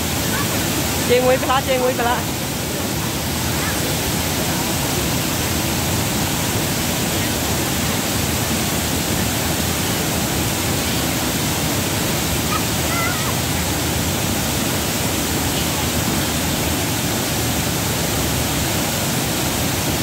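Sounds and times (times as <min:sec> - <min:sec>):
waterfall rushing: 0:00.0 - 0:20.0
faint voice: 0:12.5 - 0:13.4.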